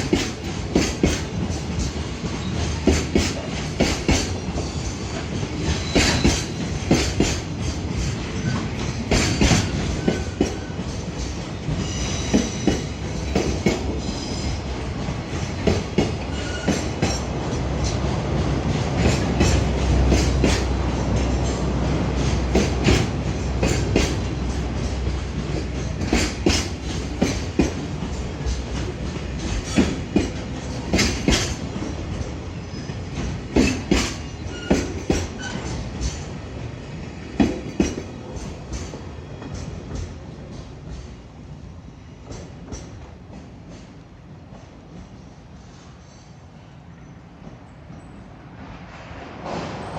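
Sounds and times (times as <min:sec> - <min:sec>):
train wheels clacking over rail joints: 0:00.0 - 0:41.5, 0:42.2 - 0:45.2
train rumble: 0:00.0 - 0:49.9
high wheel squeals: 0:11.8 - 0:12.9.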